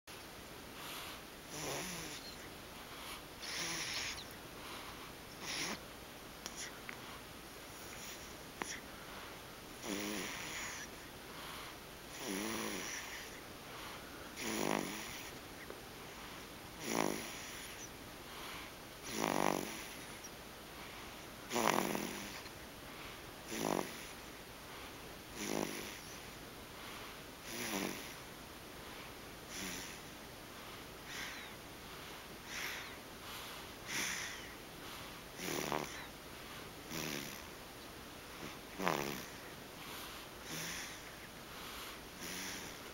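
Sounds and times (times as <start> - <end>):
infant snoring: 0.8 - 2.4, 3.0 - 4.3, 5.4 - 5.8, 6.4 - 6.8, 7.7 - 8.8, 9.8 - 13.4, 14.3 - 15.4, 16.8 - 20.3, 21.5 - 22.5, 23.4 - 24.3, 25.3 - 26.3, 27.4 - 28.3, 29.5 - 30.1, 31.0 - 31.6, 32.4 - 36.1, 36.9 - 37.5, 38.4 - 42.9.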